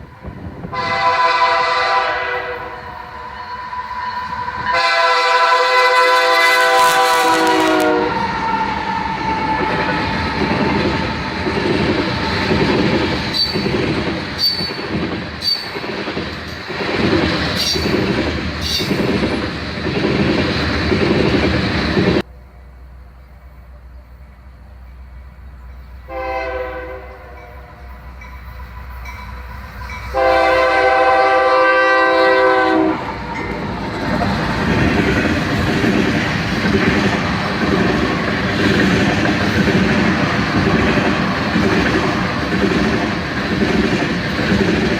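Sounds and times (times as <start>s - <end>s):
train rumbling: 0.0s - 44.9s
locomotive air horn: 0.7s - 11.3s, 26.1s - 28.0s, 30.1s - 33.1s
train wheels clattering: 7.3s - 22.3s, 33.1s - 44.9s.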